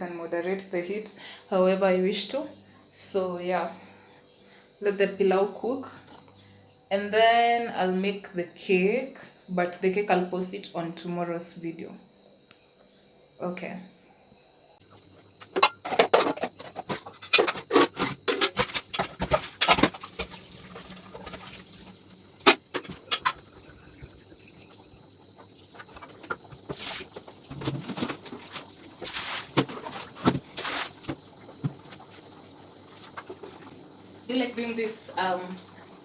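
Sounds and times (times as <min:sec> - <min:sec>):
dishes and utensils clattering: 0:15.4 - 0:21.6
water splashing: 0:18.6 - 0:36.0.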